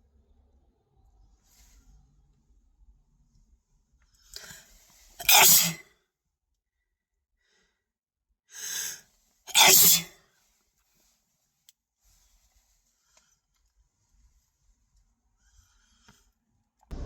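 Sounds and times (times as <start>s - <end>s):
person sneezing: 5.2s - 5.8s, 9.5s - 10.1s.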